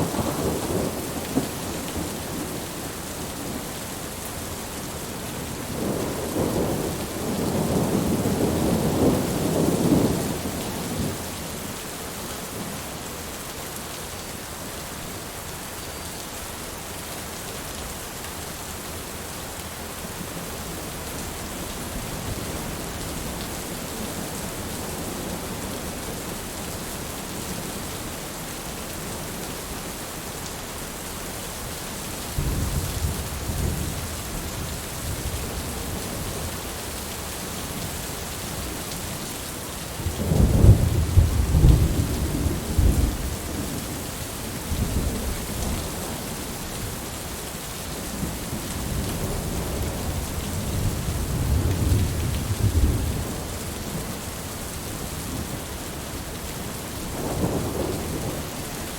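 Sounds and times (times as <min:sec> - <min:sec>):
heavy rain: 0:00.0 - 0:58.9
thunder rumbling: 0:40.0 - 0:44.0, 0:48.2 - 0:54.2, 0:57.1 - 0:58.6.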